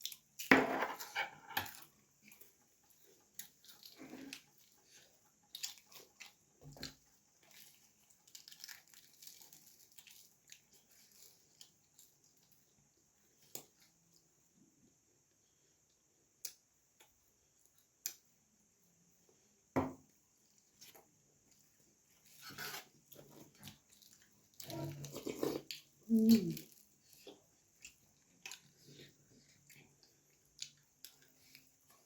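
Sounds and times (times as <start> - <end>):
wet chewing: 22.2 - 32.0.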